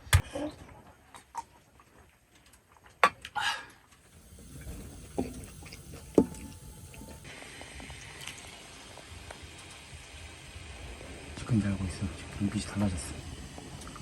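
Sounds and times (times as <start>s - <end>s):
rain pattering on a tent: 4.0s - 14.0s.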